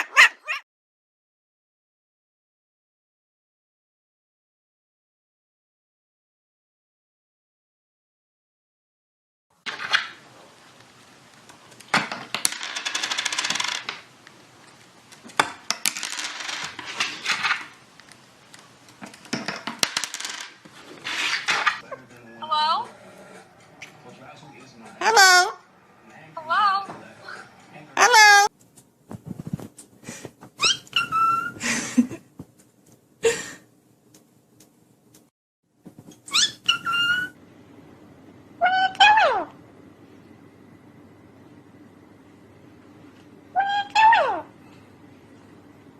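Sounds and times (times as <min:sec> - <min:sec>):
parrot squawks: 0:00.0 - 0:00.6, 0:25.0 - 0:25.6, 0:28.0 - 0:28.5, 0:30.6 - 0:31.6, 0:36.3 - 0:37.4, 0:43.6 - 0:44.5
parrot whistling: 0:30.6 - 0:31.6, 0:36.3 - 0:37.4.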